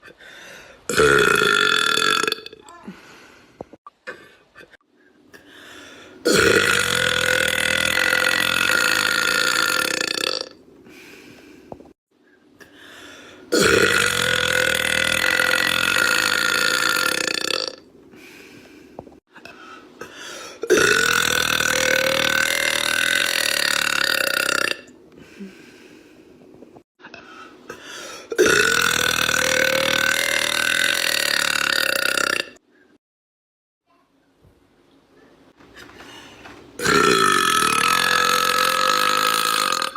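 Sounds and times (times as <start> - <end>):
woman belching: 0.9 - 2.7, 6.2 - 10.5, 13.5 - 17.8, 20.7 - 24.9, 28.4 - 32.6, 36.8 - 39.9.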